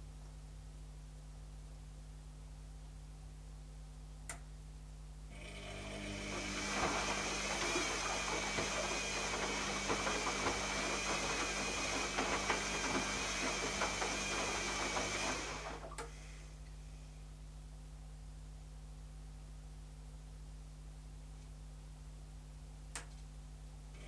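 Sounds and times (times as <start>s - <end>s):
washing machine whirring: 5.3s - 16.6s.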